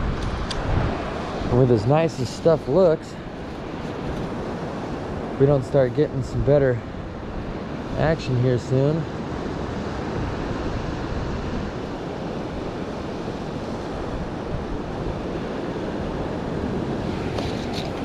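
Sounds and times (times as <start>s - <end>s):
wind rumbling on microphone: 0.0s - 18.0s.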